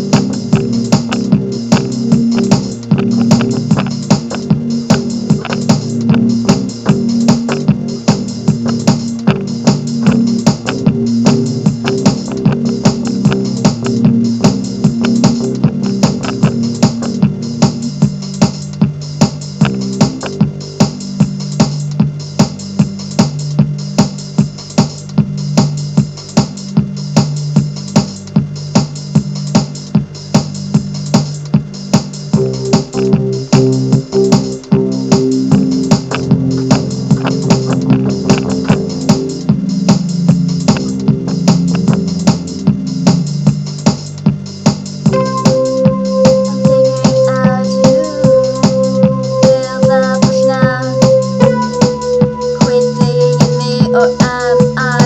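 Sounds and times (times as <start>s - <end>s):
synthesizer chords: 0.0s - 18.5s, 19.2s - 21.7s, 32.3s - 55.0s
electronic music with steady beat: 0.0s - 55.0s
wavering synth melody: 45.1s - 55.0s.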